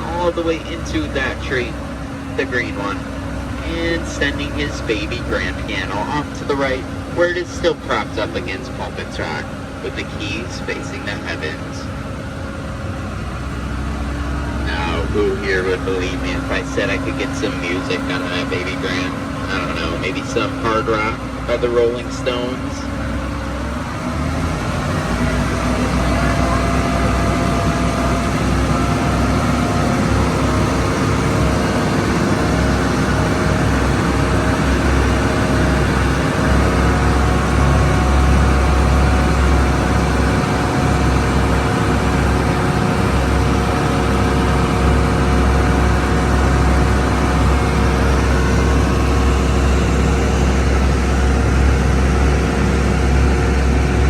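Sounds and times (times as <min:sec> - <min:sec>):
boat engine rumbling: 0:00.0 - 0:54.0.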